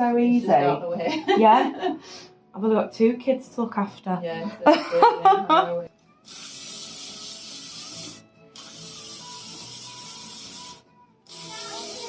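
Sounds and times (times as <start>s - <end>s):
aerosol hairspray hissing: 6.3s - 12.0s.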